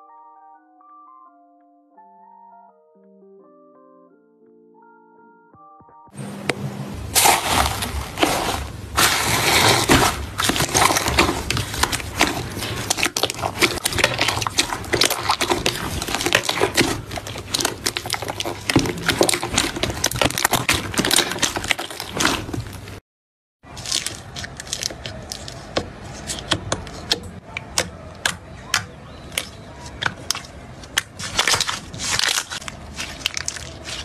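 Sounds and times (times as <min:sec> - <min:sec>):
slime crackling and popping: 0:07.0 - 0:23.0, 0:23.7 - 0:34.0.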